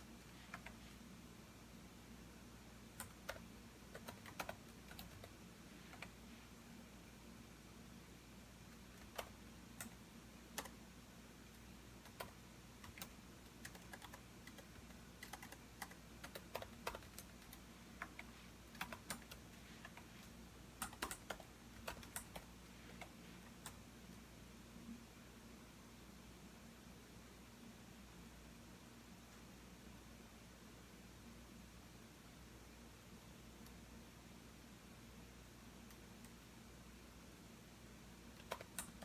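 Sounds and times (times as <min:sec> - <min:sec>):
faint low hum: 0:00.0 - 0:39.0
computer keyboard typing: 0:00.4 - 0:00.8, 0:03.0 - 0:06.2, 0:08.7 - 0:10.8, 0:12.0 - 0:23.8, 0:38.4 - 0:39.0.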